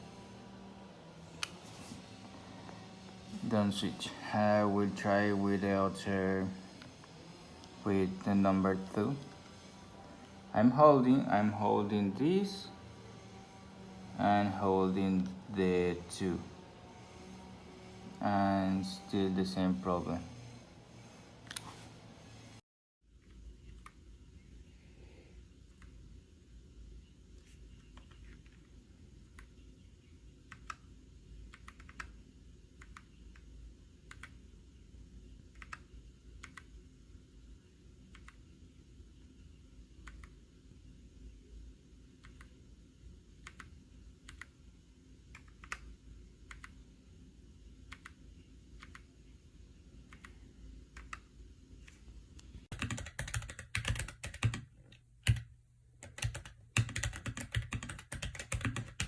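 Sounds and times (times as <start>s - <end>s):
fast typing on keyboard: 31.5s - 32.1s, 52.7s - 59.0s.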